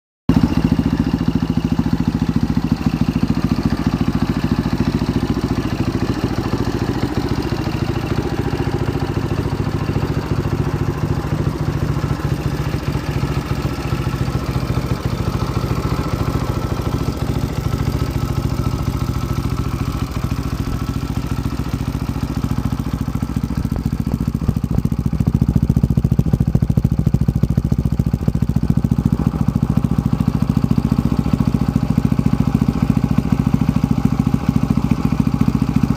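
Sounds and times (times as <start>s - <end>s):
engine idling: 0.3s - 35.9s.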